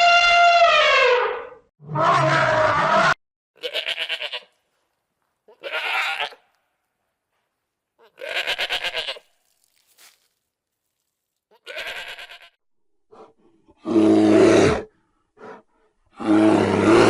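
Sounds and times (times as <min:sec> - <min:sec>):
goat bleating: 0:03.6 - 0:04.5, 0:05.5 - 0:06.5, 0:08.0 - 0:09.3, 0:11.5 - 0:12.6.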